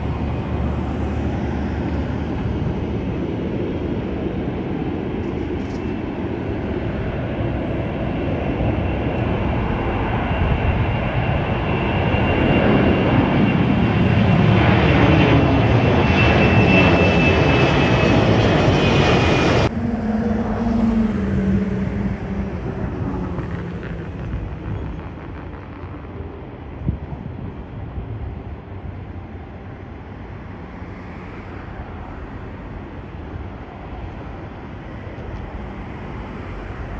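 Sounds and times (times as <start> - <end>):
airliner engines roaring: 0.0 - 36.9
distant aircraft drone: 0.0 - 36.9
turbine whine: 0.0 - 36.9.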